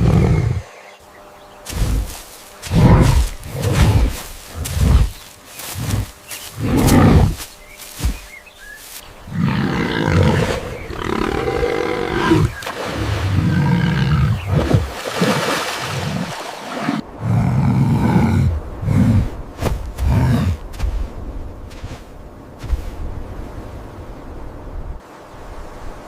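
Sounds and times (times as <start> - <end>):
animal roaring: 0.0 - 0.7, 2.6 - 5.2, 5.8 - 7.4, 9.3 - 14.9, 16.8 - 19.3.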